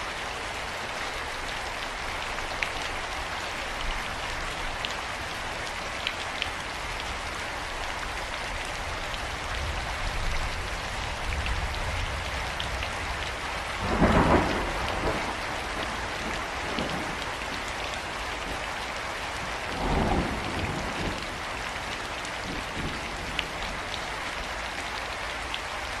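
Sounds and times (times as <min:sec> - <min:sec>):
rain pattering: 0:00.0 - 0:26.0
thunder rumbling: 0:13.8 - 0:18.7, 0:19.7 - 0:21.6.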